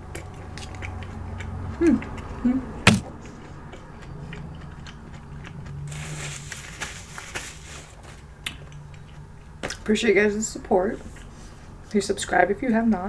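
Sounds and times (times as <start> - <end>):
crunchy chewing: 0.0 - 9.8.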